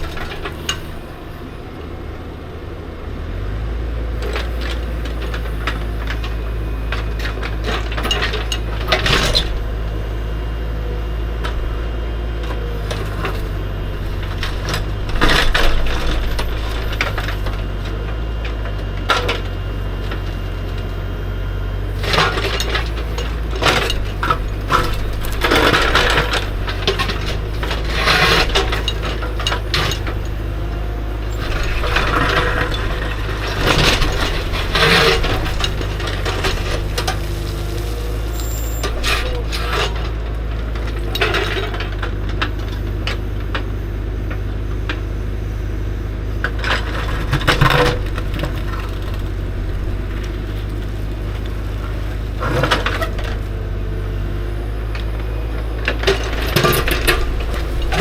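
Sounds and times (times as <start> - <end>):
diesel engine running: 0.0 - 58.0
steel bucket scraping rock: 22.0 - 42.5, 55.9 - 58.0.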